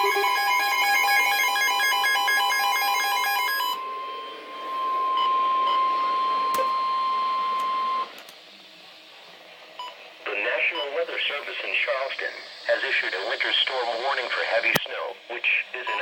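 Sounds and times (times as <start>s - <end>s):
steady alert tone: 0.0s - 5.9s.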